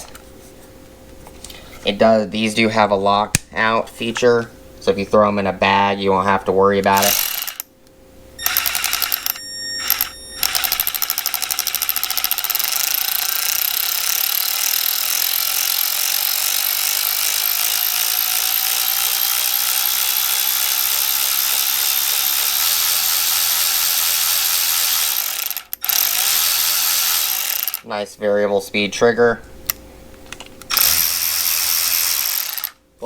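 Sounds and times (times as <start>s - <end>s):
cordless ratchet running: 7.0s - 7.7s, 8.4s - 27.8s, 30.7s - 32.8s.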